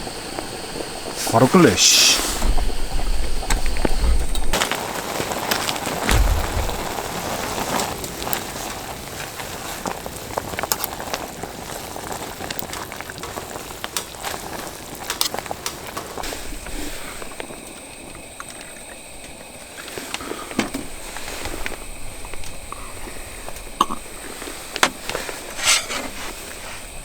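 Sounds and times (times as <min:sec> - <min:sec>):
firewood crackling in a stove: 0:00.0 - 0:27.0
dull thump: 0:06.0 - 0:07.1.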